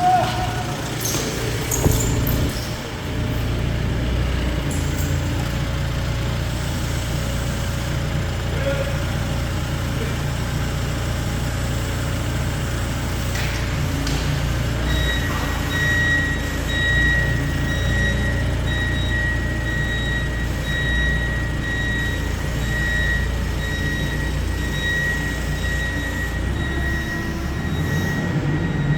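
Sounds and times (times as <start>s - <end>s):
diesel engine running: 0.0s - 28.9s
reversing beeper: 14.8s - 28.9s.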